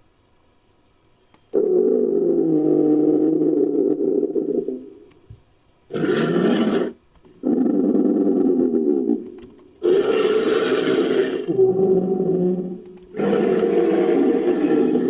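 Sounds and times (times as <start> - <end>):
rhinoceros groaning: 9.8 - 15.0.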